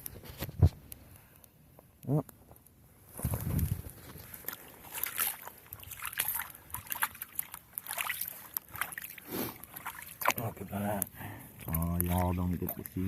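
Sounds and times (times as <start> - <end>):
water sloshing in ice hole: 3.2 - 13.0.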